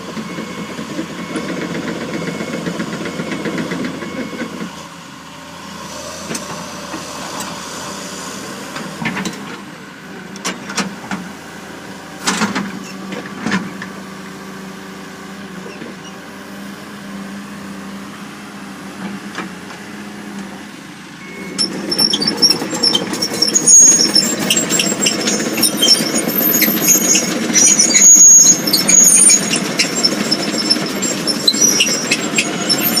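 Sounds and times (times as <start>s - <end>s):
excavator diesel engine running: 0.0s - 33.0s
high metallic squeals: 21.4s - 33.0s.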